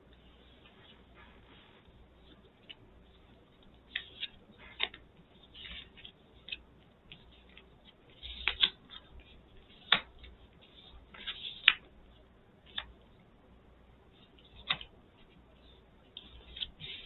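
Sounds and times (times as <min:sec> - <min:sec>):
cards rustling: 0:00.4 - 0:11.9, 0:14.2 - 0:17.0
cards clicking on a table: 0:08.2 - 0:09.1, 0:09.8 - 0:10.4, 0:14.6 - 0:14.9.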